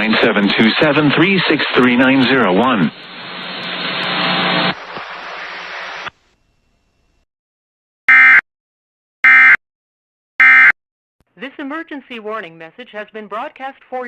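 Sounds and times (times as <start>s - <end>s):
radio static hiss: 0.0s - 6.3s.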